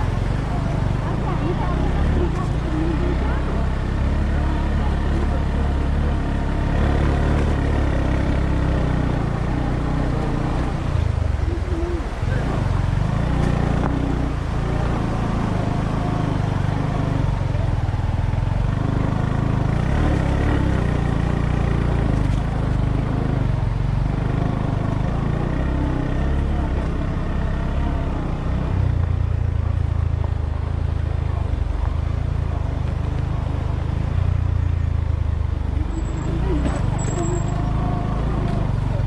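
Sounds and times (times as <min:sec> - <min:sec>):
off-road vehicle engine droning: 0:00.0 - 0:39.0.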